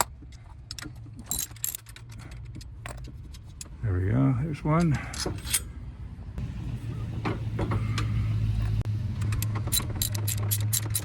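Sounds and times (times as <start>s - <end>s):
wrench clicking on metal bolts: 0.0s - 3.8s, 9.2s - 11.0s.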